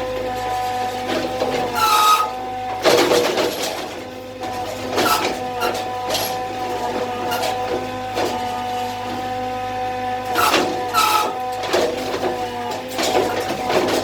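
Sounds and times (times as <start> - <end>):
short rasping noises: 1.7 - 2.4.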